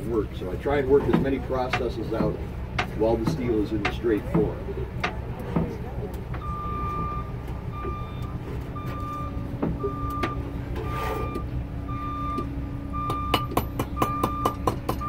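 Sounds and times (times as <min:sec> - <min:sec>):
hammer striking steel on anvil: 0:13.1 - 0:15.0.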